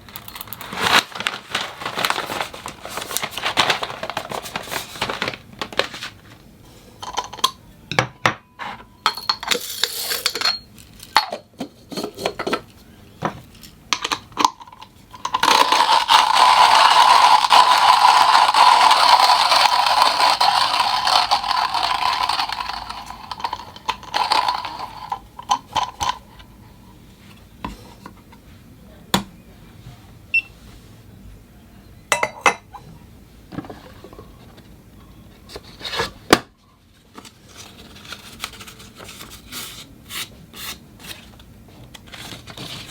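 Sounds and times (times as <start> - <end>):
clinks of beans and utensils: 7.0 - 26.2
electric coffee grinder whirring: 15.4 - 25.2.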